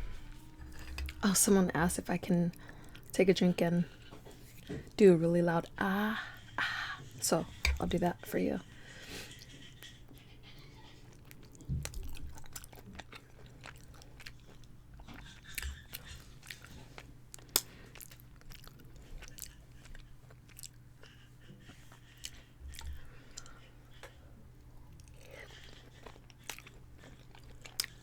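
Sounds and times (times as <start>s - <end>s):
faint low hum: 0.0s - 28.0s
chewing and biting food: 9.2s - 28.0s.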